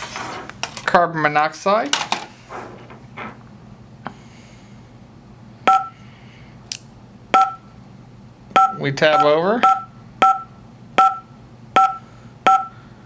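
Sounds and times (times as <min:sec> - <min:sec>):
touchscreen beeps: 0:05.7 - 0:06.0, 0:07.4 - 0:07.6, 0:08.6 - 0:11.2, 0:11.8 - 0:12.7.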